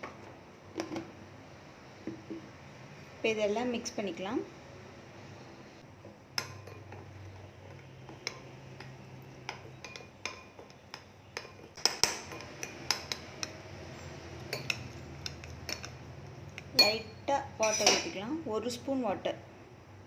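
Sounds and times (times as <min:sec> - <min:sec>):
spoon clinking against bowl: 0:09.5 - 0:13.6, 0:14.4 - 0:16.0, 0:16.6 - 0:18.2.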